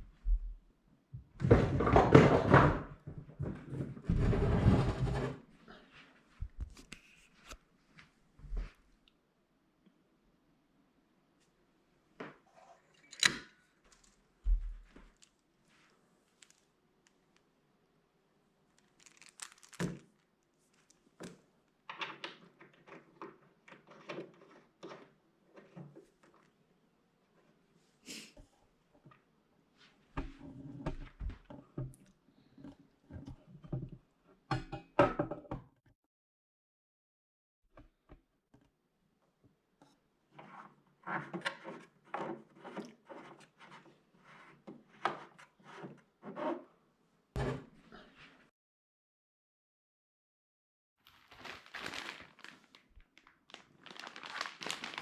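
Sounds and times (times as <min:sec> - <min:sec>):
rubbing and scraping of objects: 0:01.4 - 0:07.6
handling rustling and clicking: 0:12.8 - 0:17.5, 0:18.7 - 0:26.5.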